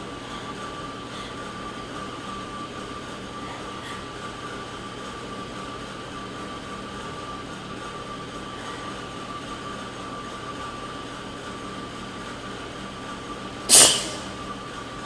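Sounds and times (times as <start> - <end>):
air conditioner hum: 0.0 - 15.0
person sneezing: 13.7 - 14.4.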